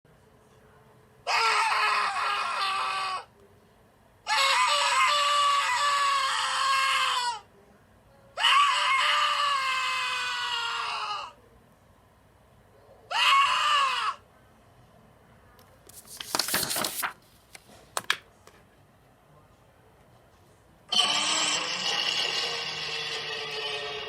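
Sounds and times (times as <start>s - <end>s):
person screaming in fear: 1.3s - 3.2s.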